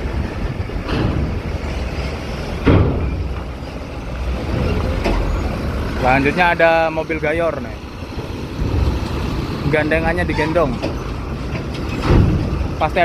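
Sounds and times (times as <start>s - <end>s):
wind noise: 0.0s - 6.1s, 7.8s - 12.9s
heavy vehicles running: 0.0s - 13.0s
sharp knocks: 2.6s - 3.5s, 10.7s - 12.7s.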